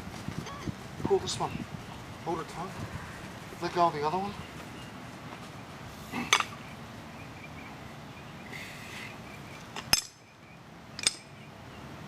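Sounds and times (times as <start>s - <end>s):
outdoor background hiss: 0.0s - 12.0s
sharp clinks: 9.8s - 10.2s, 11.0s - 11.3s.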